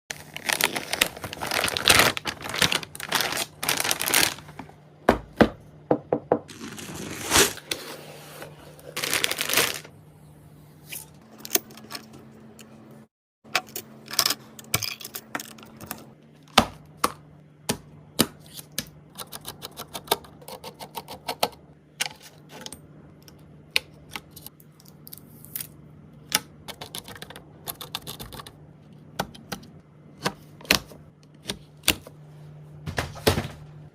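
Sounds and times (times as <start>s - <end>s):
steady low hum: 0.3s - 19.1s.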